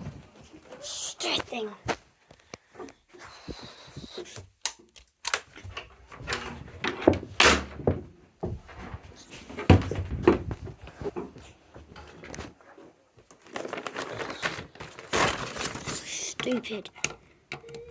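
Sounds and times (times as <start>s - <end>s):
knocks and thuds of handling: 5.5s - 12.6s.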